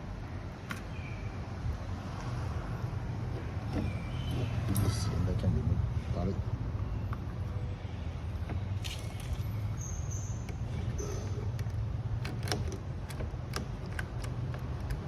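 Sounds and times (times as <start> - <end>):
door lock parts clicking: 8.8 - 15.0.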